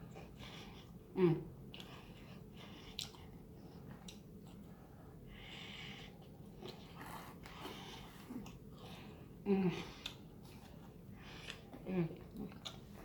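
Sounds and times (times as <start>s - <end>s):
person chewing pizza: 0.0s - 13.0s.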